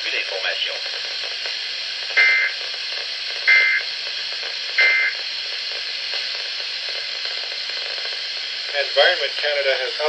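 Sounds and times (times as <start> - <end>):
radio static: 0.0 - 10.0
buzzy two-tone data chirps: 2.2 - 2.6, 3.5 - 3.8, 4.8 - 5.2.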